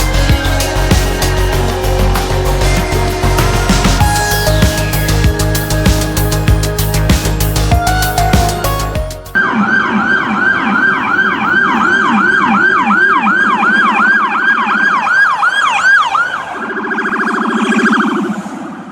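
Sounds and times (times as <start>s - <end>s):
electronic siren yelp and warble: 9.4s - 18.9s.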